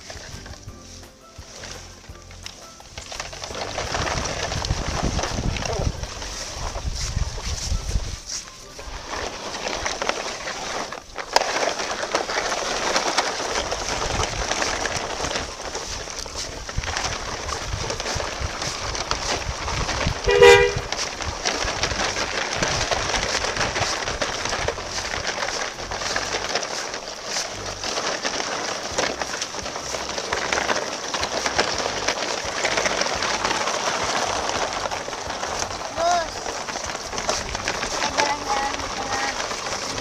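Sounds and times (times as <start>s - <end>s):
background noise: 0.0s - 40.0s
light clicks and rattles: 0.0s - 40.0s
short horn toot: 20.3s - 20.9s.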